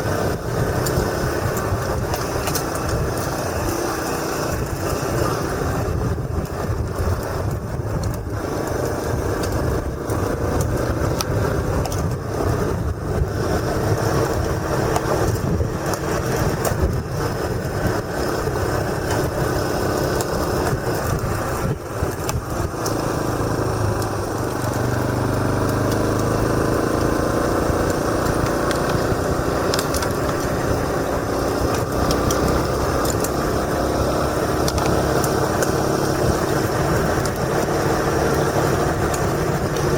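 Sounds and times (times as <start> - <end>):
motorcycle engine running: 0.0 - 39.9
wind and road noise rumble: 0.0 - 39.9.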